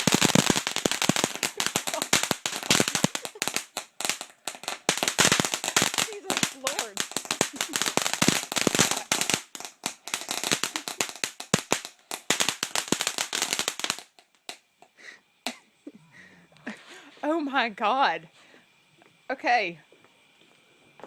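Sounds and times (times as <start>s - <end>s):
firework crackling pops: 0.0s - 15.6s.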